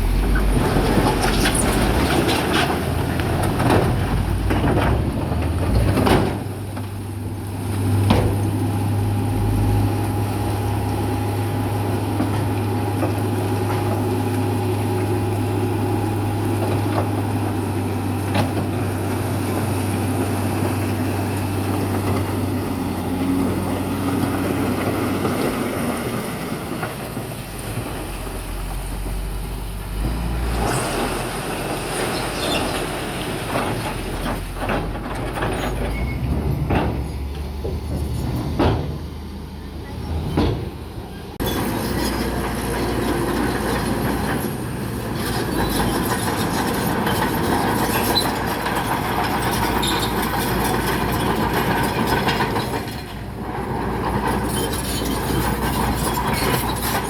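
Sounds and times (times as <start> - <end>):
deep rumble: 0.0 - 6.6, 8.4 - 12.2, 27.3 - 32.1
diesel machinery engine drone: 0.0 - 57.0
metal knocks and clanks: 33.4 - 39.2.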